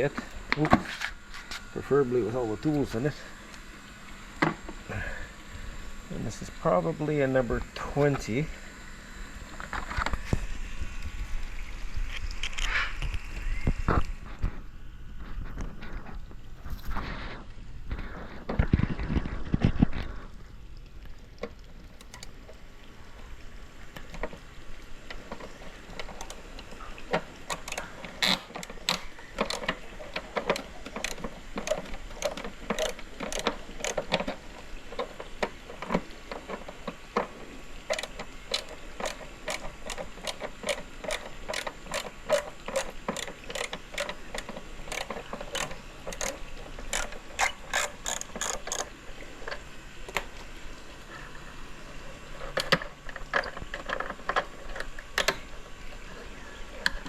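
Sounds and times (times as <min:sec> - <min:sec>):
ratcheting screwdriver clicking: 0:30.5 - 0:34.1, 0:37.9 - 0:48.9.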